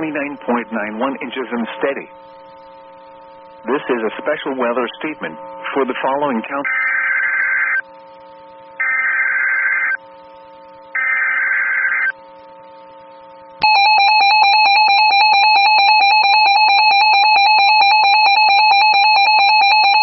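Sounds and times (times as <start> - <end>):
harsh buzzing data bursts: 0.0 - 20.0
shrill electronic attention tone: 6.6 - 7.9, 8.8 - 10.1, 10.8 - 12.2, 13.6 - 20.0.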